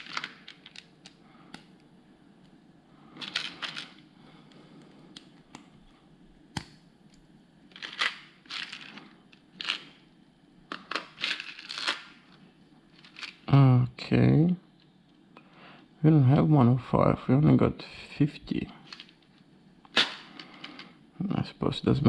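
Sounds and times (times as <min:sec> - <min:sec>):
plastic pieces clicking and rustling: 0:00.0 - 0:01.2, 0:03.2 - 0:04.0, 0:07.7 - 0:10.0, 0:10.7 - 0:13.5, 0:18.9 - 0:19.3, 0:19.9 - 0:20.9.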